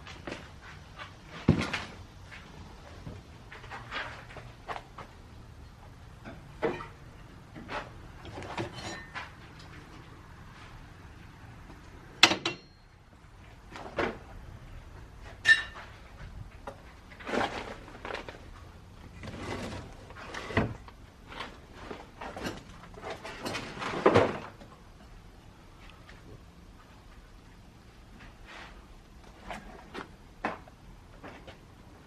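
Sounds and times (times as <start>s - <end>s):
scraping and rustling: 0.0s - 5.2s, 15.3s - 24.6s
objects knocking and clunking: 0.0s - 10.2s, 12.1s - 25.1s.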